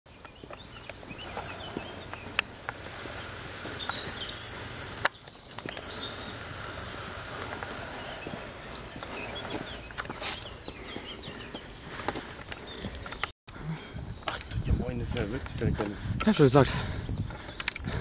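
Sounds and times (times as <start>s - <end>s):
outdoor background noise: 0.1s - 18.0s
sharp clicks: 0.2s - 8.4s.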